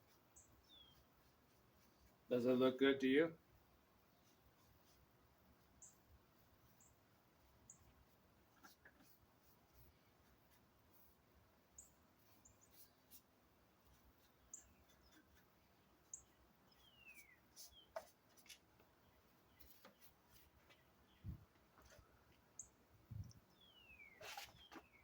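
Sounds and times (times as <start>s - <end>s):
faint high bird chirps: 0.3s - 2.1s, 5.7s - 7.0s, 11.7s - 13.2s, 14.2s - 18.1s, 19.0s - 25.0s.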